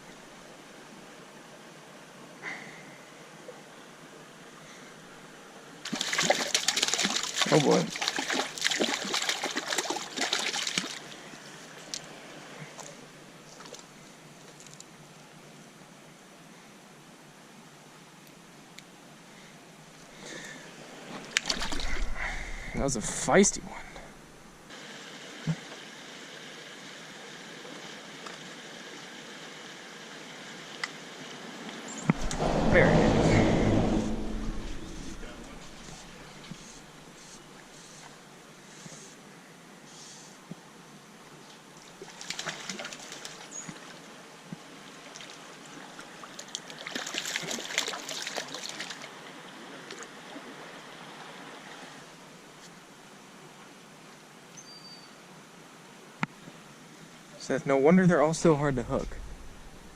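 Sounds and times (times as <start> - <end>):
creek water running: 5.8 - 14.0, 41.6 - 52.1
water splashing: 5.9 - 11.0, 21.4 - 22.8.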